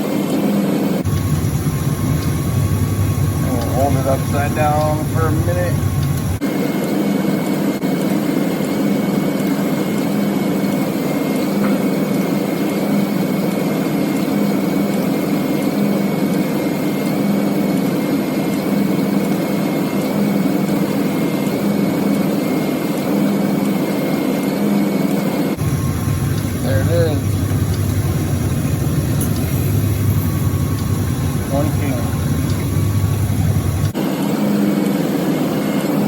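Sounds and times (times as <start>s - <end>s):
thin steady whine: 0.0s - 36.0s
pickup engine idling: 25.6s - 34.0s.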